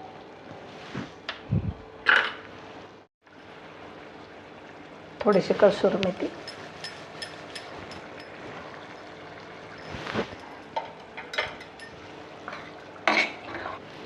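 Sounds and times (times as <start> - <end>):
gravy simmering in a pan: 3.3 - 14.0.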